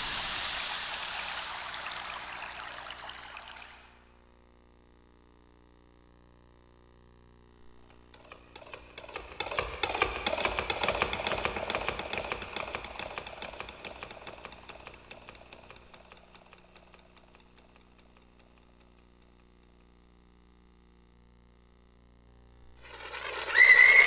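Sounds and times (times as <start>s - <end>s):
dense stream of rapid clicks: 22.8s - 24.0s.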